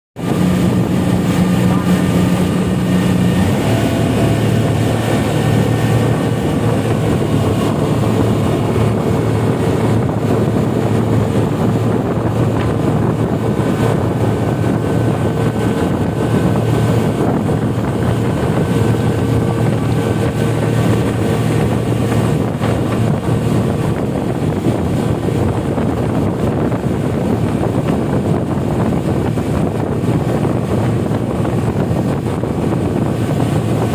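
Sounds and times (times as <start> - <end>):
speedboat engine running: 0.2 - 33.9
wind buffeting microphone: 0.2 - 33.9.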